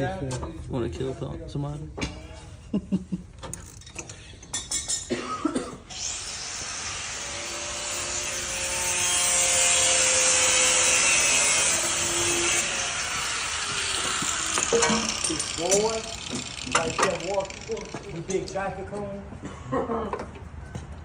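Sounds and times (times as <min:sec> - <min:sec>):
power tool rasping: 0:05.9 - 0:18.5.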